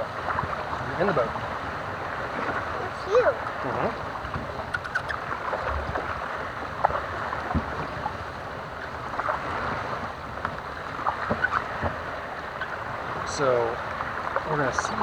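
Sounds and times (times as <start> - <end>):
paddle swishing in water: 0.0 - 15.0
light knocks on kayak: 6.8 - 7.9, 11.2 - 12.0.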